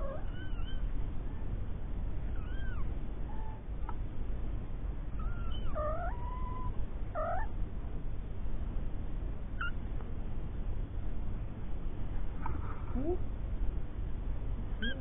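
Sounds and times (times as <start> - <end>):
steady low rumble: 0.0 - 15.0
kittens mewing: 14.8 - 15.0.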